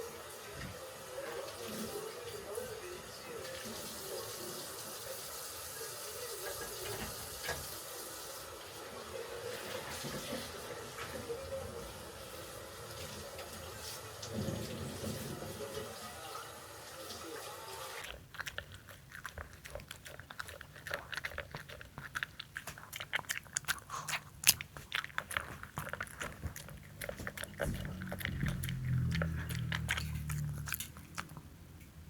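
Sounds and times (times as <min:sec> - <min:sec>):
crunchy food being chewed: 0:18.0 - 0:31.6.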